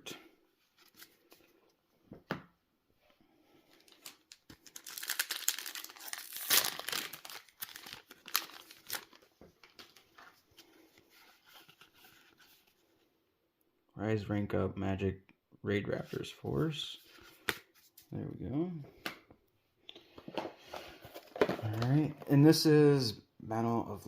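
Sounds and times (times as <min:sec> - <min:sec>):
foil wrapper tearing and crinkling: 0:03.8 - 0:09.2.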